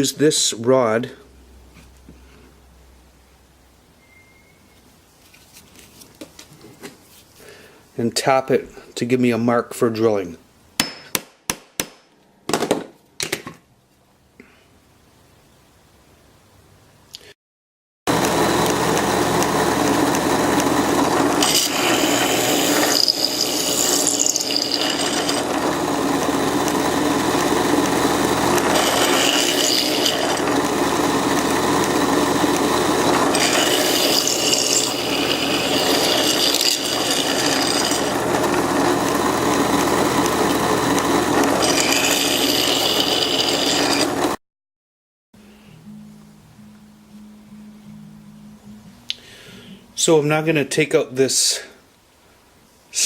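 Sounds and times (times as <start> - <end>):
drill bit cutting into wood: 18.1 - 44.4
electric drill running: 18.1 - 44.4.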